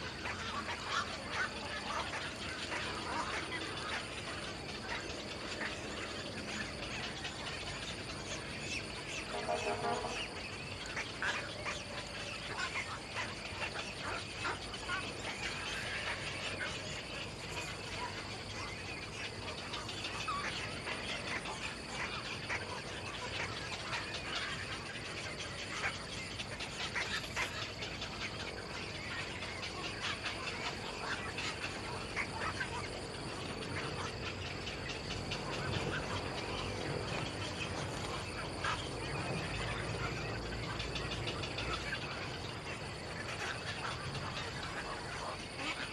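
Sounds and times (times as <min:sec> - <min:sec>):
steady high-pitched whine: 0:00.0 - 0:45.9
birds chirping: 0:12.8 - 0:45.9.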